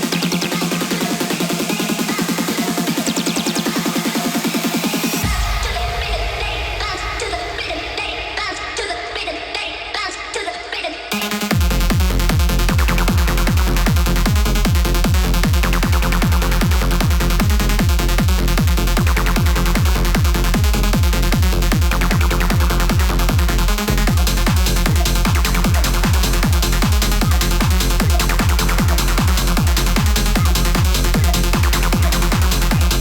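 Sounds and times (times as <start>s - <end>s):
bassline: 0.0s - 6.9s, 11.1s - 33.0s
techno music: 0.0s - 33.0s
kick drum: 11.6s - 33.0s.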